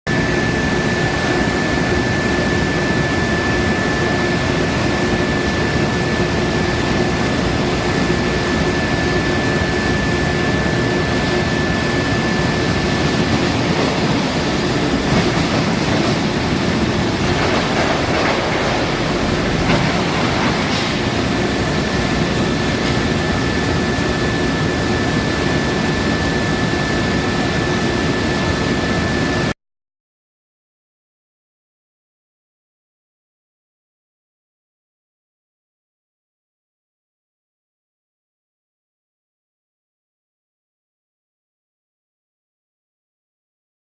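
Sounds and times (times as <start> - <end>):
high whine: 0.1 - 29.6
loud machinery noise: 0.1 - 29.6.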